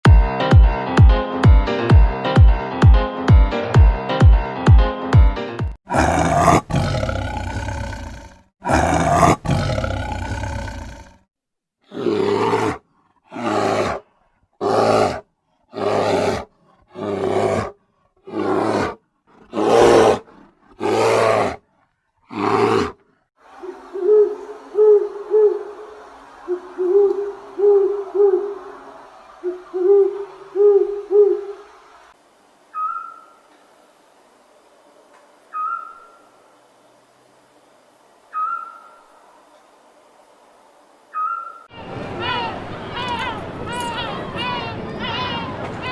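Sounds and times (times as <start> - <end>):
big cat roaring: 5.9 - 11.2, 11.9 - 21.7, 22.3 - 23.0
owl hooting: 23.6 - 25.8, 32.7 - 33.4, 35.5 - 36.2, 38.3 - 39.1, 41.1 - 45.5
short high calls: 32.7 - 33.4, 41.1 - 45.9.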